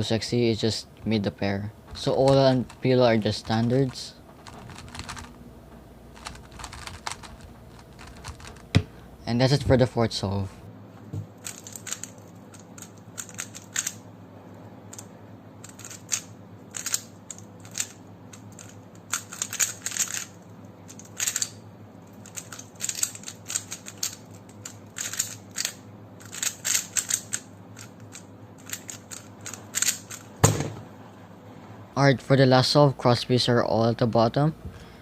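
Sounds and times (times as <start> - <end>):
puzzle cube clicking turns: 2.0 - 5.4, 6.1 - 8.9, 11.4 - 14.0, 15.6 - 20.3, 21.0 - 21.5, 22.2 - 30.3.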